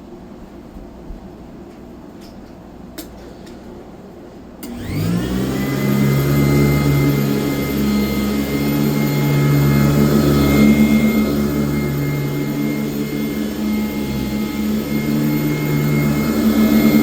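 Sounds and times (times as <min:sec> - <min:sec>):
vacuum cleaner switch click: 0:04.6 - 0:05.1
vacuum cleaner motor running: 0:04.6 - 0:17.0.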